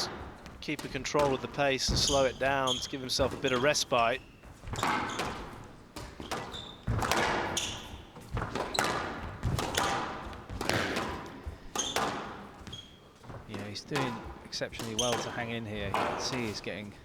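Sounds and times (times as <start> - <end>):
shoes squeaking on wooden floor: 0.0 - 17.0
squash ball hits echoing: 0.0 - 17.0.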